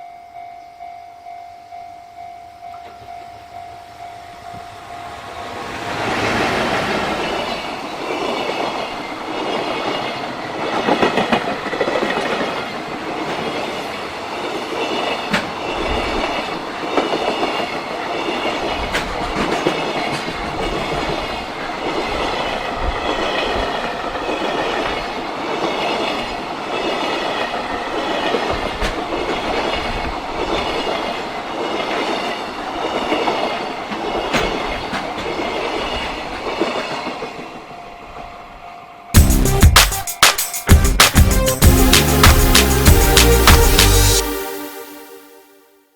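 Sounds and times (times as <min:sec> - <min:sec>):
freight train rumbling: 0:02.7 - 0:38.6, 0:40.6 - 0:45.1
wheels clacking over rail joints: 0:04.4 - 0:37.6.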